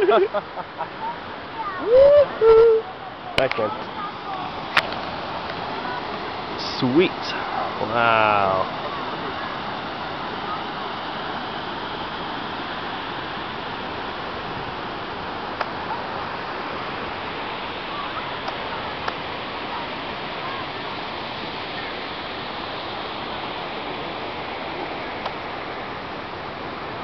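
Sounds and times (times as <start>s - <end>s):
waterfall roaring: 0.0s - 27.0s.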